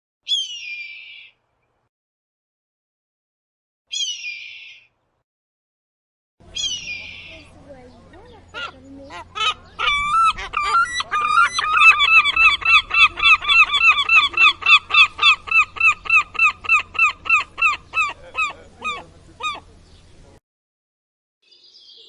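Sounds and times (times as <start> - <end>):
bird harsh repeated calls: 0.2 - 1.4, 3.9 - 5.0, 6.4 - 20.2.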